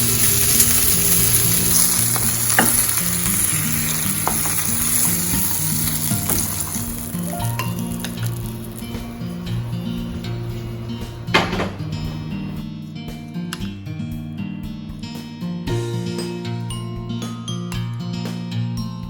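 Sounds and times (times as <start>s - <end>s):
chicken sizzling in oil: 0.0s - 9.5s.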